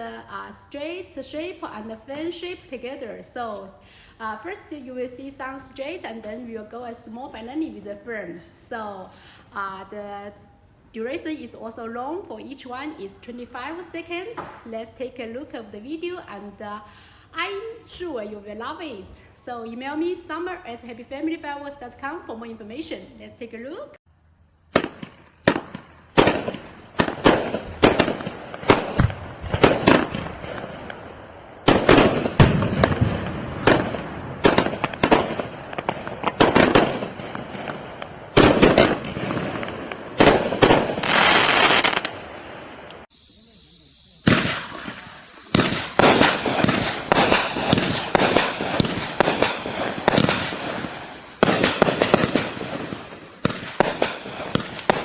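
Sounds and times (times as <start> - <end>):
firework shots launching and bursting: 24.7 - 43.0, 44.1 - 55.0.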